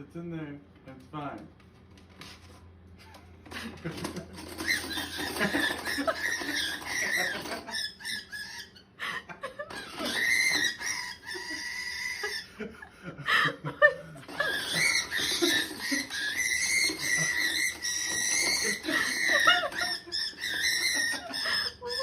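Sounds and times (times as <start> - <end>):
animal high-pitched squeaking: 4.4 - 8.9, 9.7 - 12.5, 14.3 - 22.0.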